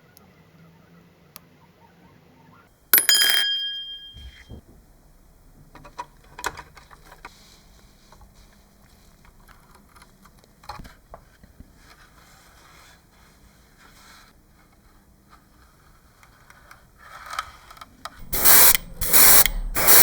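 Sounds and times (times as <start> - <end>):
small hard parts clicking: 16.5 - 20.0.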